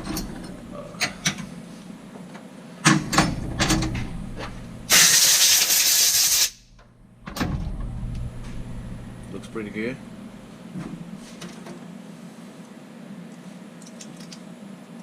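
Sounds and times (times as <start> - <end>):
compressed air hissing: 4.9 - 6.6.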